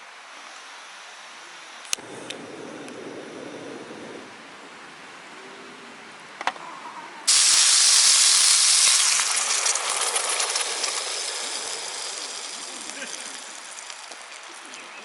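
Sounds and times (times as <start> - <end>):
loud hiss: 7.3 - 15.0.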